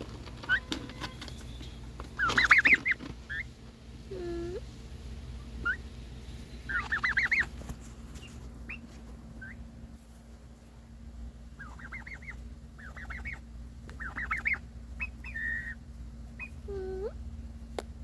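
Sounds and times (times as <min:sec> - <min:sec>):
turkeys calling: 0:00.0 - 0:03.8, 0:05.4 - 0:09.7, 0:11.5 - 0:17.0.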